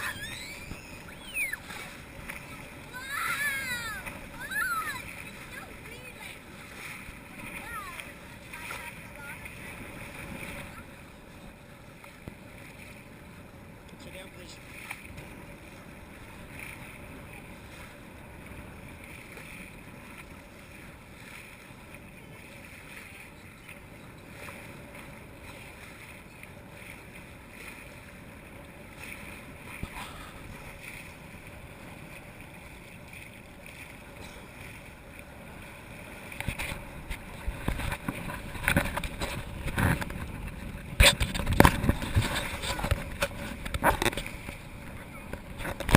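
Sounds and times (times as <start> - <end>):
water rushing past boat: 0.0 - 45.9
wind: 0.0 - 45.9.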